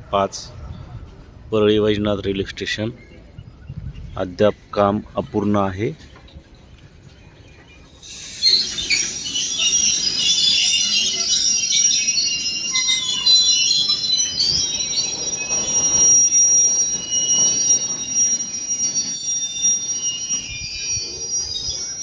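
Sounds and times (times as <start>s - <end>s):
train wheels squealing on rails: 5.9s - 22.0s
train running rumble: 6.5s - 22.0s.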